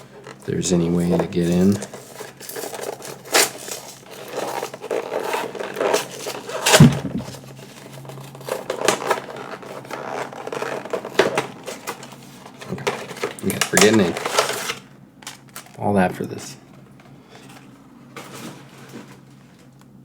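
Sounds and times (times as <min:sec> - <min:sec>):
packaging crinkling and tearing: 0:00.2 - 0:15.8
loud knock: 0:06.8 - 0:07.4.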